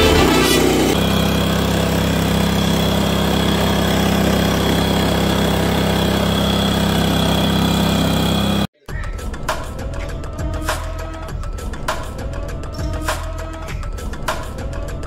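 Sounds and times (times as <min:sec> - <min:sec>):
small petrol engine running: 0:00.0 - 0:08.7.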